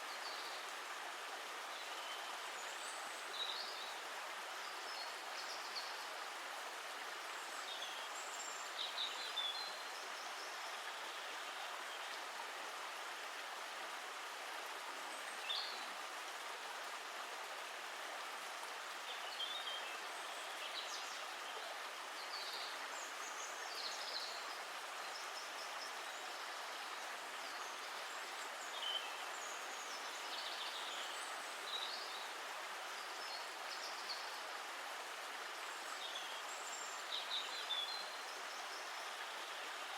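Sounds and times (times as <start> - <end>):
stream of water flowing: 0.0 - 39.9.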